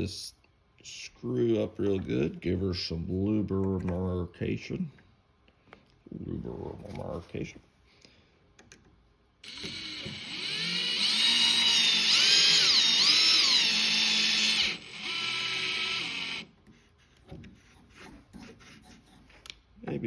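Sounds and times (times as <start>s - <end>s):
power drill driving screw into wood: 9.4s - 16.5s.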